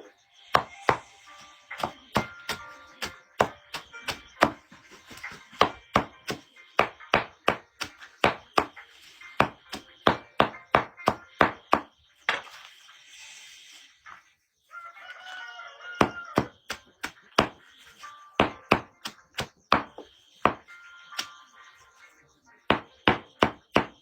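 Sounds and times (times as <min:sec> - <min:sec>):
blade chopping into wood: 0:01.8 - 0:08.8.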